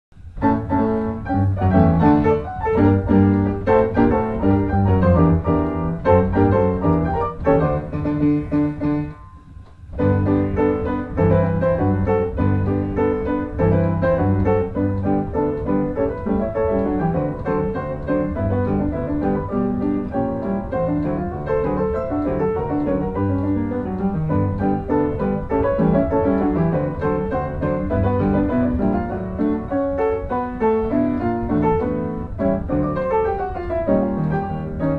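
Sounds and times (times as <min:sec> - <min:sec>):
piano music: 0:00.1 - 0:34.9.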